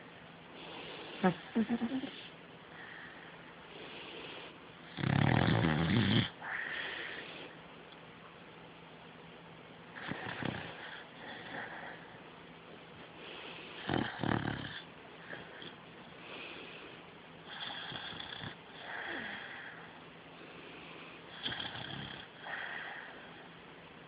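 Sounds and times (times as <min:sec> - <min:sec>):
dog snoring: 0:04.0 - 0:07.4, 0:10.0 - 0:12.0, 0:13.8 - 0:15.8, 0:17.4 - 0:19.7, 0:21.3 - 0:23.4.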